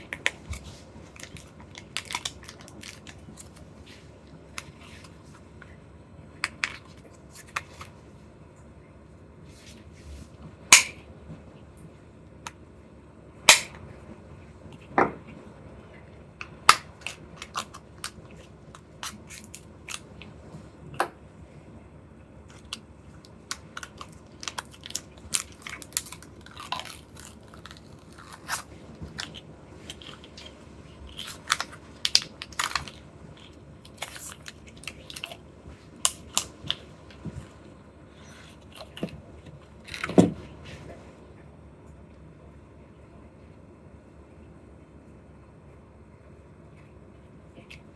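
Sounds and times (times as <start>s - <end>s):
plastic packaging crinkling: 0.0s - 4.0s, 16.8s - 20.1s, 22.5s - 37.6s
loud plastic snaps: 10.8s - 11.0s, 13.5s - 13.8s.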